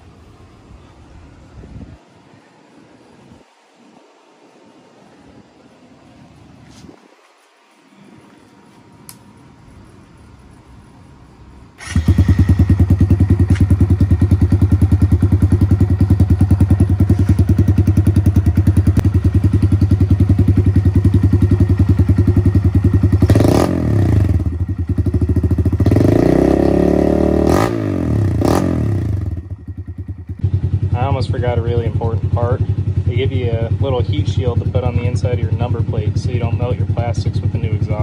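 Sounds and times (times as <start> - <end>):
motorcycle engine idling: 11.8 - 38.0
motorcycle engine revving: 11.8 - 38.0.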